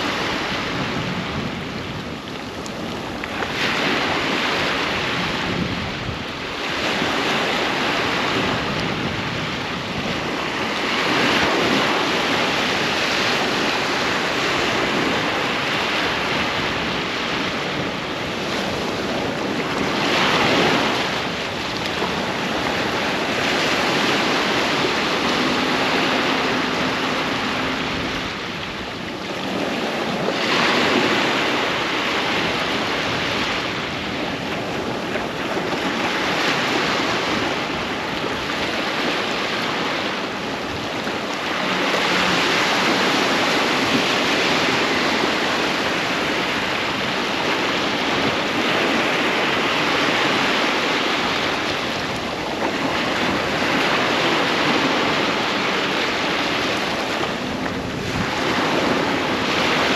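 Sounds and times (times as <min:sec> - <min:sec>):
waves breaking on beach: 0:00.0 - 0:59.9.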